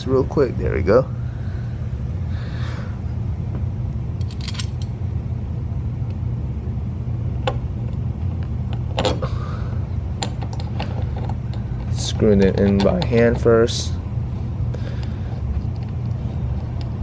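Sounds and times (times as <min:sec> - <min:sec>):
steady low rumble: 0:00.0 - 0:17.0
light clicks of screws and frame: 0:10.2 - 0:13.3.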